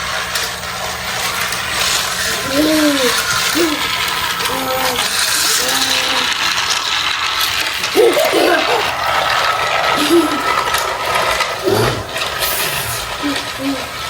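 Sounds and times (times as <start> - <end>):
toy train gear whirring: 0.0 - 14.0
children's vocal sounds: 2.3 - 6.6, 7.8 - 14.0.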